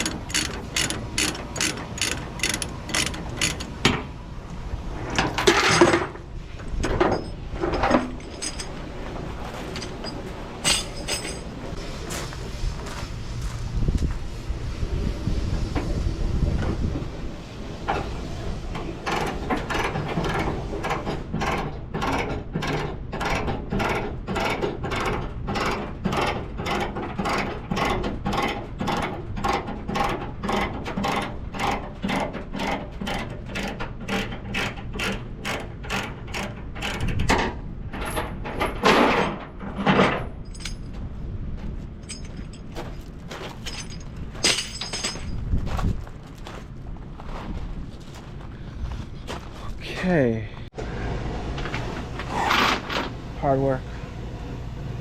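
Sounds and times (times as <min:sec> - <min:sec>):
ratchet binder clicking: 0:00.0 - 0:03.9, 0:27.2 - 0:37.2
chain clanks: 0:00.0 - 0:04.0, 0:05.2 - 0:06.2, 0:06.8 - 0:11.7, 0:26.6 - 0:41.0, 0:42.0 - 0:45.8.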